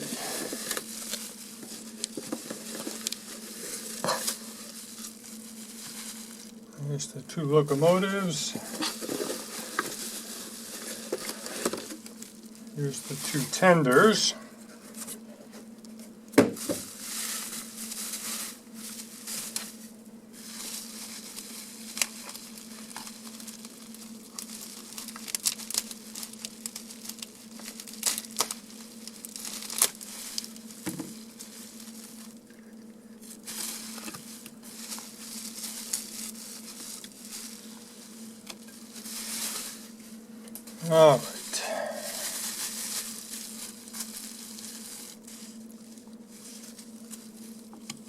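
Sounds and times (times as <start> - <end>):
packing wrap crinkling: 0.0 - 6.8, 7.6 - 16.0, 16.6 - 48.0.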